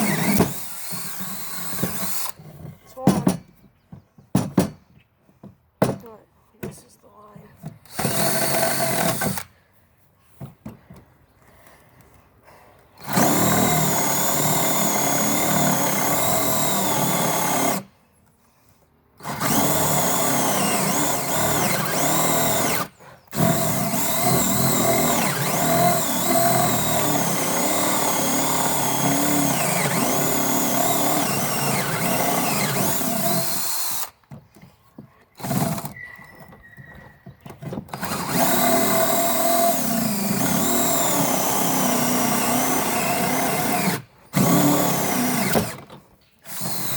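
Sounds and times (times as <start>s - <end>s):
cordless drill drilling: 0.0s - 2.4s, 7.8s - 9.5s, 13.0s - 17.9s, 19.2s - 34.2s, 35.4s - 36.0s, 37.9s - 46.9s.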